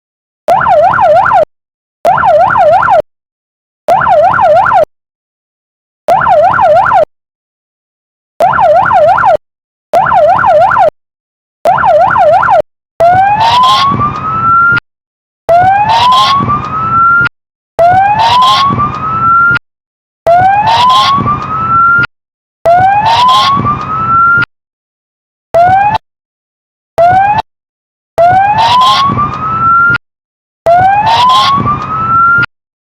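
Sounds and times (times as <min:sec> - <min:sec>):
rising siren wail: 0:00.5 - 0:01.5, 0:02.1 - 0:03.1, 0:03.9 - 0:04.9, 0:06.1 - 0:07.1, 0:08.4 - 0:09.4, 0:10.0 - 0:11.0, 0:11.7 - 0:14.8, 0:15.5 - 0:19.6, 0:20.3 - 0:22.1, 0:22.7 - 0:24.5, 0:25.6 - 0:26.0, 0:27.0 - 0:27.5, 0:28.2 - 0:30.0, 0:30.7 - 0:32.5
siren yelp bursts: 0:00.5 - 0:01.5, 0:02.1 - 0:03.1, 0:03.9 - 0:04.9, 0:06.1 - 0:07.1, 0:08.4 - 0:09.4, 0:10.0 - 0:11.0, 0:11.7 - 0:14.8, 0:15.5 - 0:19.6, 0:20.3 - 0:22.1, 0:22.7 - 0:24.5, 0:25.6 - 0:26.0, 0:27.0 - 0:27.5, 0:28.2 - 0:30.0, 0:30.7 - 0:32.5.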